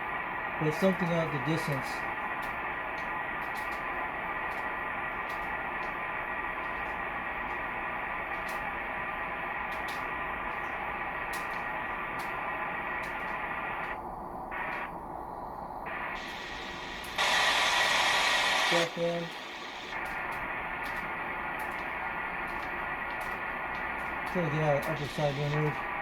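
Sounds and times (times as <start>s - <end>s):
faint steady tones: 0.0s - 26.0s
radio static hiss: 0.0s - 26.0s
faint regular ticks: 2.4s - 6.0s, 9.7s - 14.0s, 19.2s - 25.9s.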